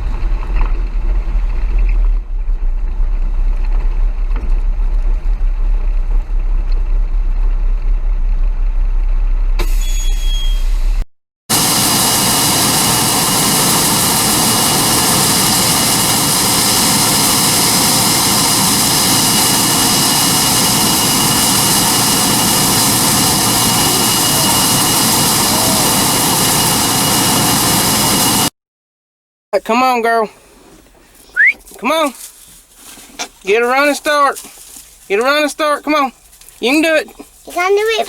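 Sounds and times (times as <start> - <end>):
high whine: 0.0 - 28.5
heavy farm machinery roaring: 11.5 - 28.5.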